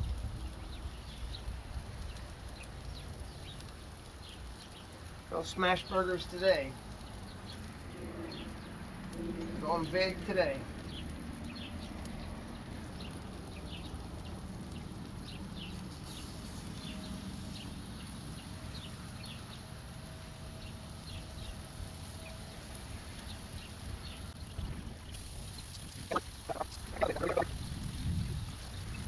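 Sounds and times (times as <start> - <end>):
birds chirping: 5.5 - 16.2, 23.2 - 27.7.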